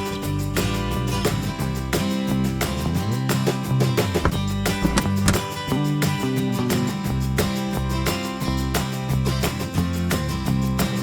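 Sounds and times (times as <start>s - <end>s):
plucked acoustic guitar: 0.0s - 11.0s.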